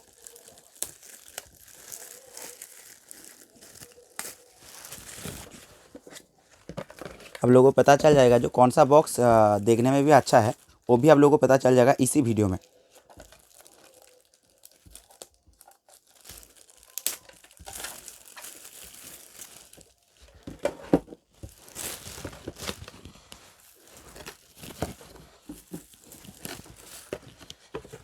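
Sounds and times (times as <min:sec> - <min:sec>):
paper tearing and crumpling: 0:00.0 - 0:05.7.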